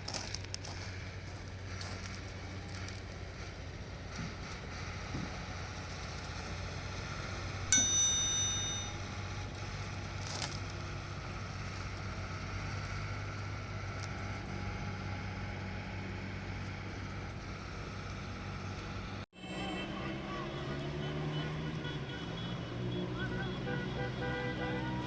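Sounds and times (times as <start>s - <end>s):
metallic clang ringing: 7.7s - 9.5s.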